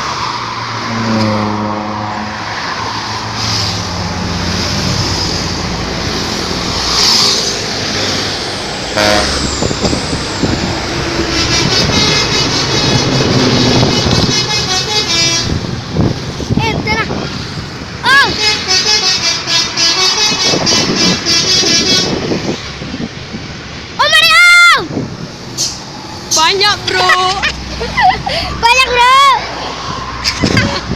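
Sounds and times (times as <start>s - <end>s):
engine and traffic noise: 0.0s - 30.9s
bus horn playing tune: 0.9s - 2.4s, 8.9s - 10.0s, 11.0s - 15.7s, 18.3s - 22.3s.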